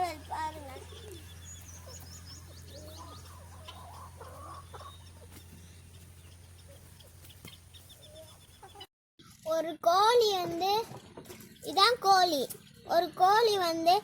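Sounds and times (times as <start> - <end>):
chickens clucking faintly: 0.0 - 8.9
small birds chirping: 0.0 - 9.4, 10.1 - 13.9.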